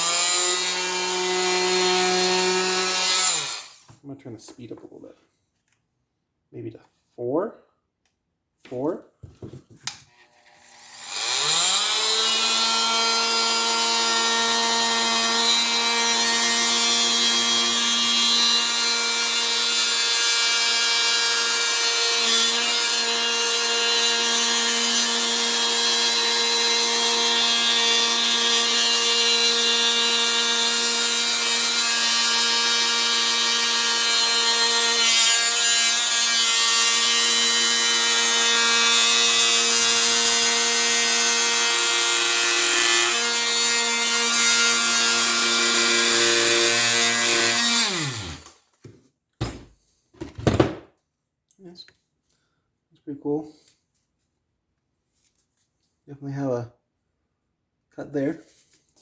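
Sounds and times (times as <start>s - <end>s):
oscillating multi-tool cutting wood: 0.0s - 3.9s, 10.1s - 48.6s.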